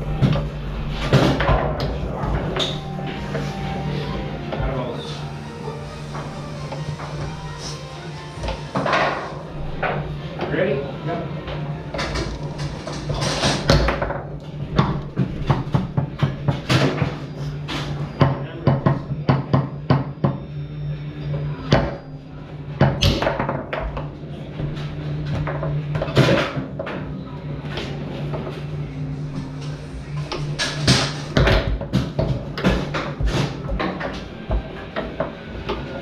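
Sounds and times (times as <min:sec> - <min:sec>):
foosball rods clacking: 0:00.0 - 0:03.5, 0:11.4 - 0:20.4, 0:22.8 - 0:28.7, 0:29.6 - 0:36.0
foosball ball knocking: 0:00.1 - 0:03.4, 0:11.6 - 0:17.2, 0:22.8 - 0:24.1, 0:30.3 - 0:36.0.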